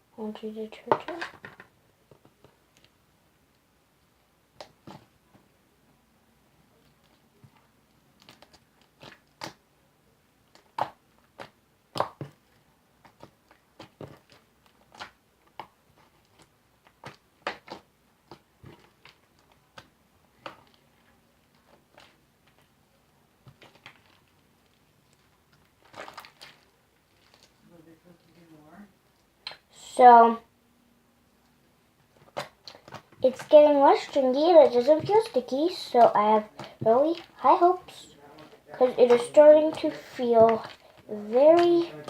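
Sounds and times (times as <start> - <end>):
slime squelching: 6.6 - 9.7, 10.4 - 30.4, 31.4 - 42.0
slime popping: 10.5 - 20.9, 23.4 - 27.6, 32.1 - 38.0, 38.8 - 42.0.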